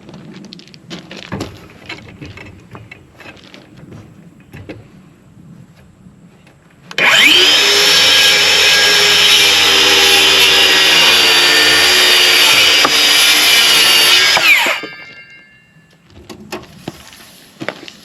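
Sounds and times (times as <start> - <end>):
electric power saw cutting: 6.9 - 15.1.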